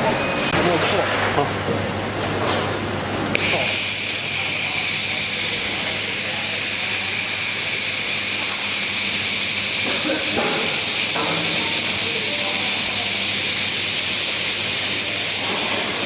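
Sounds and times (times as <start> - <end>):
laser welder hissing: 3.3 - 16.0.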